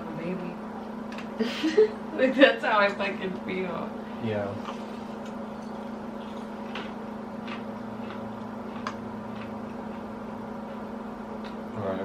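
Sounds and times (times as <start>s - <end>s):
steady low hum: 0.0s - 12.0s
snack crunching: 4.6s - 11.7s.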